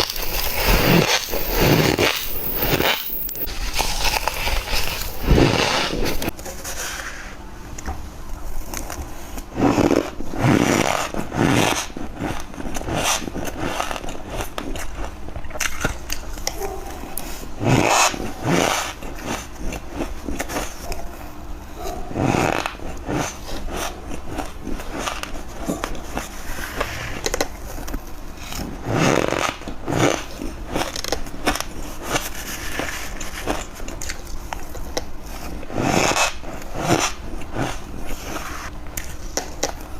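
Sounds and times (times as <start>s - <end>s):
quiet ice crackling: 0.0s - 6.3s.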